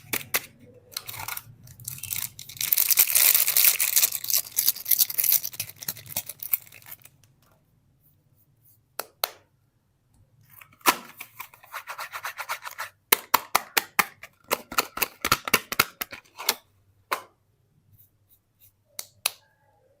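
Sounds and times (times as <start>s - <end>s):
packaging crackling and snapping: 0.0s - 7.3s.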